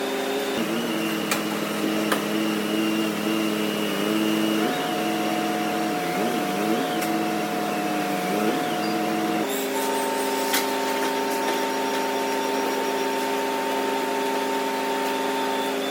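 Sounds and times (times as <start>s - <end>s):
transmission whining: 0.4s - 15.9s.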